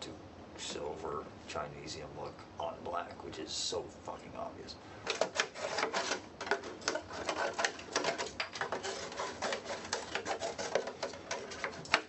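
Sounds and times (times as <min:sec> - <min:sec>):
tools clicking and scraping on rim: 0:05.1 - 0:12.0.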